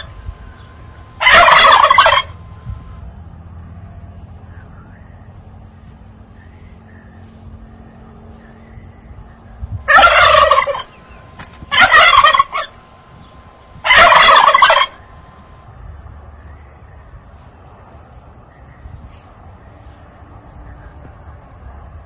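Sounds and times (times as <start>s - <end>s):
turkey gobbling: 1.0s - 2.6s, 9.8s - 15.6s.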